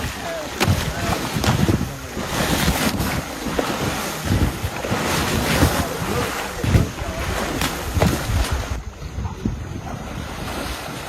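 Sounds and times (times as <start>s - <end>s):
open water washing: 0.0s - 11.0s
wind buffeting microphone: 0.0s - 11.0s.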